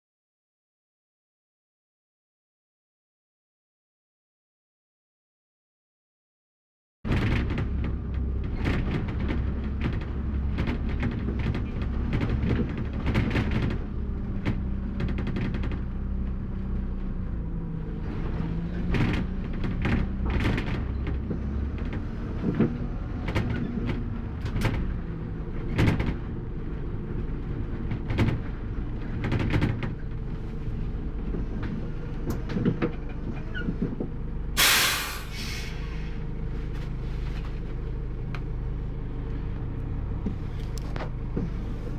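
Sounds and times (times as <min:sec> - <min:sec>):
sharp knocks and rattles: 0:07.1 - 0:16.1, 0:25.5 - 0:26.3, 0:27.4 - 0:30.2
bus diesel engine running: 0:07.1 - 0:41.9
loud hiss of air: 0:34.6 - 0:36.0.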